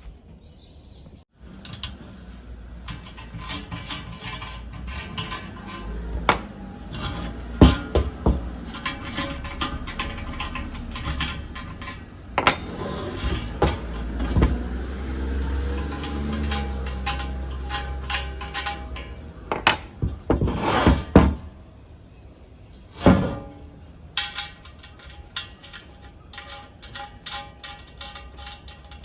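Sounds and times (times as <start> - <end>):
metal items clinking: 1.4 - 21.2, 22.9 - 29.0.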